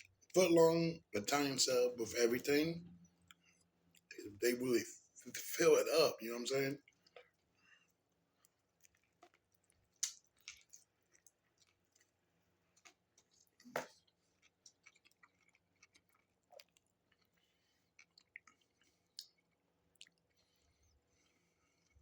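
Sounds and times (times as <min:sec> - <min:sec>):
person chewing with wet mouth clicks: 0:08.4 - 0:12.1, 0:14.4 - 0:20.4.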